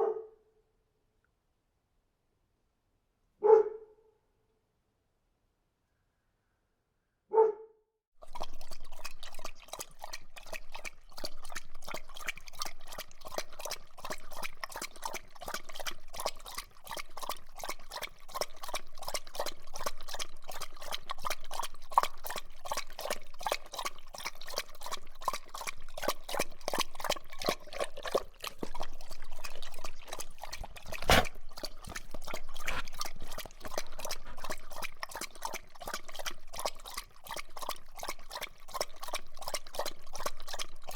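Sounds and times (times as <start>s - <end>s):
dog barking: 0.0s - 0.5s, 3.4s - 4.1s, 7.3s - 7.8s
dog lapping water: 8.2s - 40.9s.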